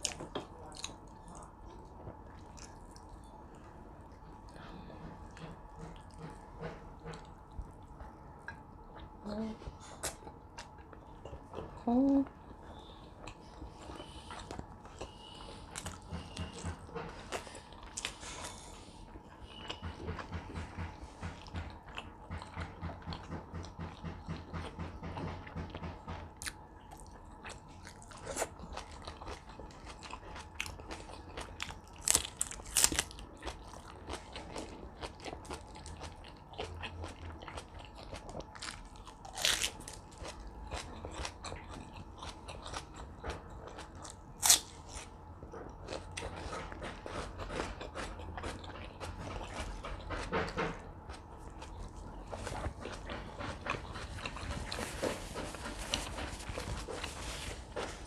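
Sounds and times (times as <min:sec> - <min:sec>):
chewing with crunchy bites: 0:00.0 - 0:58.0.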